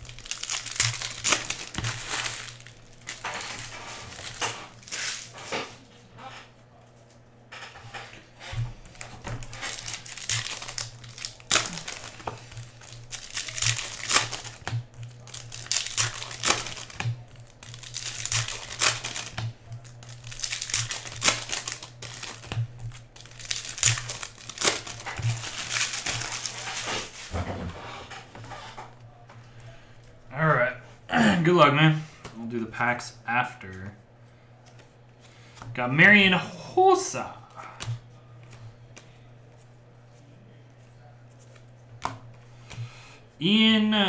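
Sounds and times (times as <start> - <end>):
plastic wrappers crinkling: 0.0 - 5.6, 8.5 - 27.3
low steady hum: 0.0 - 44.0.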